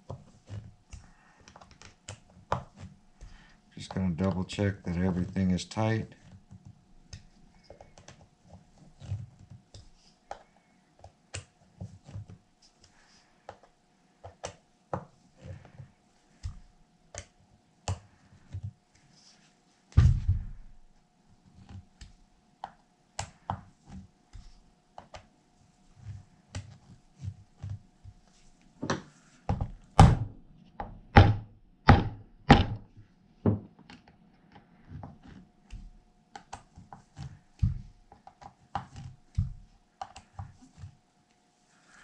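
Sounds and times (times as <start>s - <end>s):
heavy thunk: 20.0s - 20.6s
loud knocks: 31.1s - 32.9s.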